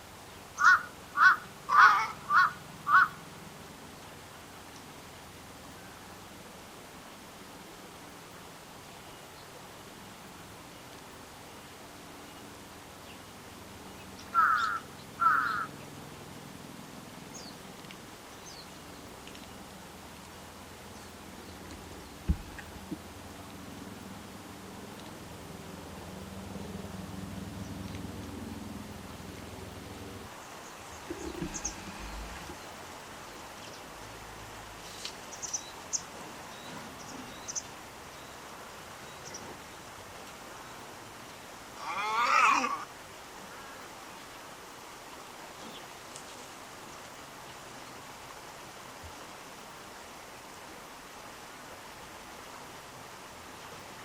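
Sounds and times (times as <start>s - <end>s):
outdoor background noise: 0.0s - 54.0s
egret croaking calls: 0.6s - 3.2s, 14.3s - 15.7s, 31.0s - 32.7s, 41.8s - 42.9s
small birds chirping: 30.5s - 34.0s, 34.8s - 38.4s.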